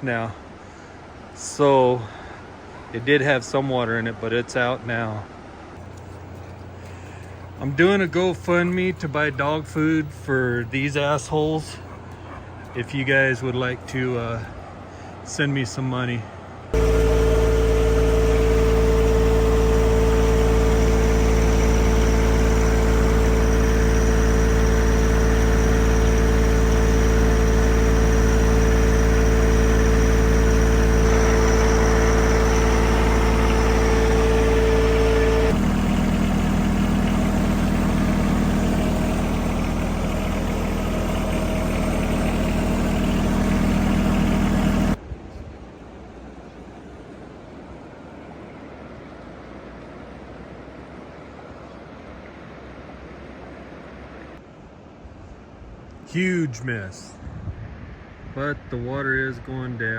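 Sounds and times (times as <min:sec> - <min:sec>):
machine engine humming: 0:16.7 - 0:45.0.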